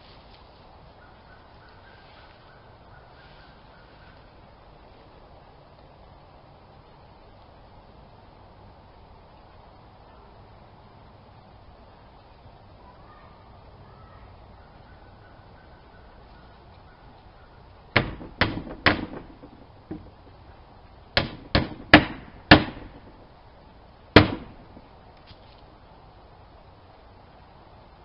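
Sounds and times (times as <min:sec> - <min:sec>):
hammer blows on wood: 0:18.0 - 0:20.3, 0:21.2 - 0:23.3, 0:24.2 - 0:24.9.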